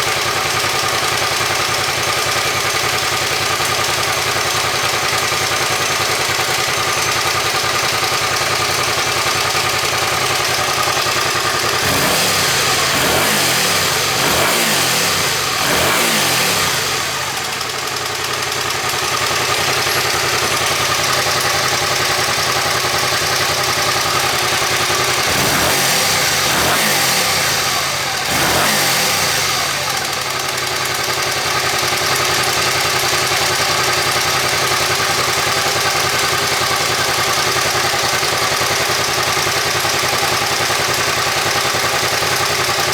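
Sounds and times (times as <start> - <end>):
motorcycle engine idling: 0.0 - 42.9.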